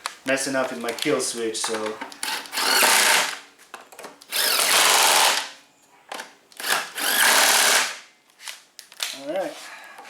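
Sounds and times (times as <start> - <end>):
power drill whining: 2.2 - 3.3, 4.3 - 5.4, 6.6 - 8.0.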